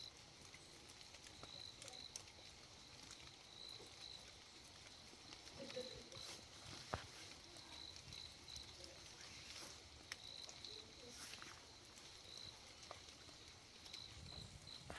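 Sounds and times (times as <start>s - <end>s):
water dripping: 0.0s - 14.9s.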